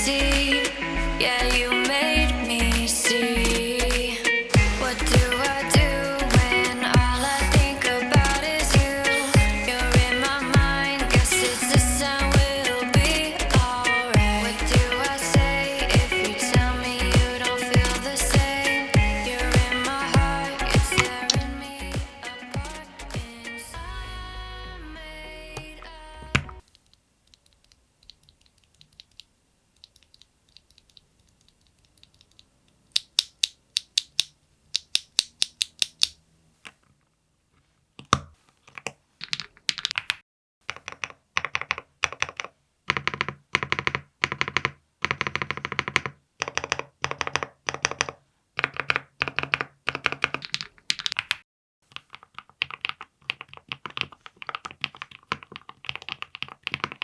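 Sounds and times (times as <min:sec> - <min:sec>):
keyboard key clicks: 0:26.4 - 0:36.2
fast typing on keyboard: 0:38.7 - 0:57.0.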